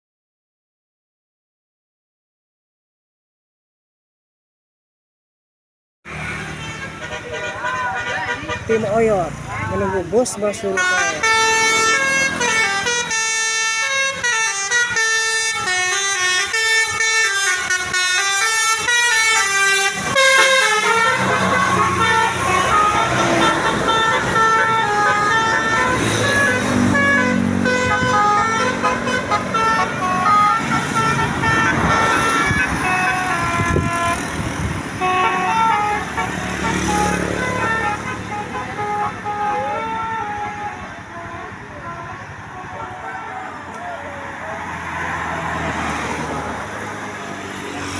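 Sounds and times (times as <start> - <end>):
multi-tone bus horn tune: 6.1 - 9.2, 10.0 - 44.0
bus engine: 6.1 - 47.9.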